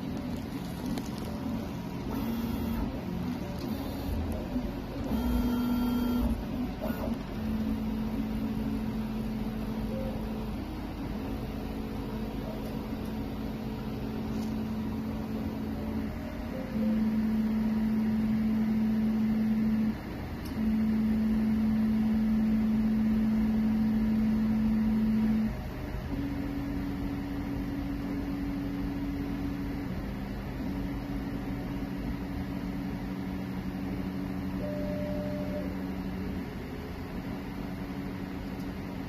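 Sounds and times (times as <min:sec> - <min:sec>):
stepper motors humming: 0:00.0 - 0:28.9.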